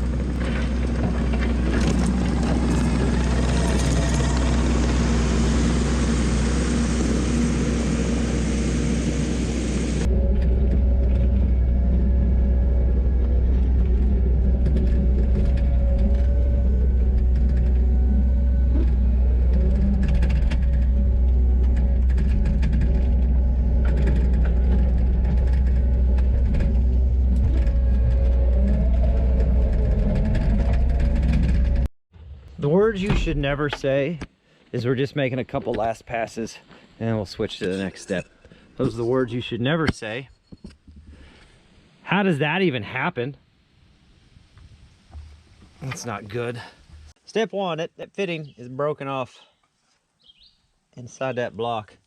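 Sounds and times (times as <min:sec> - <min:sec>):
diesel engine running: 0:00.0 - 0:31.9.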